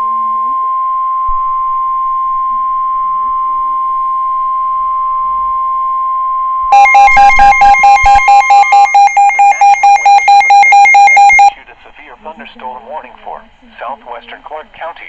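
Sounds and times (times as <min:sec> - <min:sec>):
steady warning alarm tone: 0:00.0 - 0:11.5
electronic alert beeping rapidly: 0:06.7 - 0:11.5.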